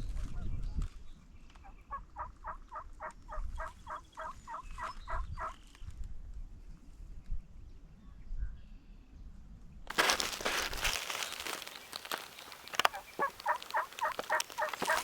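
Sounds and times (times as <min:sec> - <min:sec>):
turkey yelping: 0:01.9 - 0:05.5, 0:12.3 - 0:15.0
rustle: 0:09.9 - 0:15.0.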